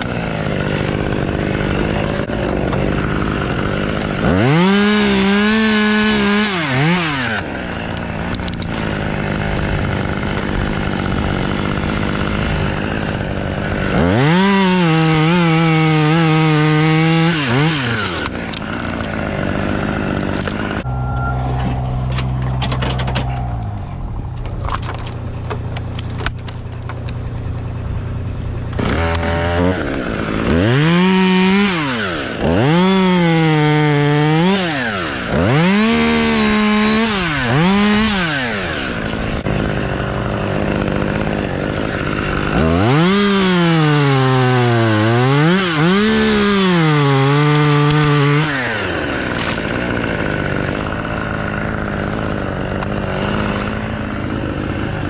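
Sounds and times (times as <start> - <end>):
chainsaw revving: 0.0 - 21.2, 21.8 - 55.0.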